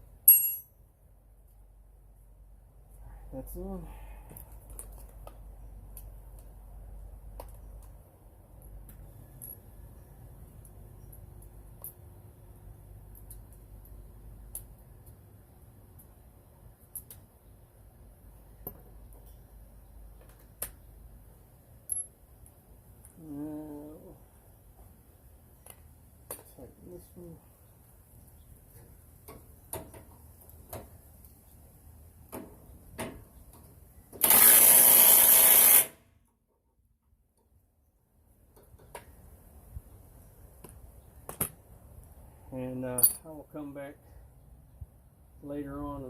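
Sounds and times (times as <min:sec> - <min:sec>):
impact wrench running: 0:34.2 - 0:36.0.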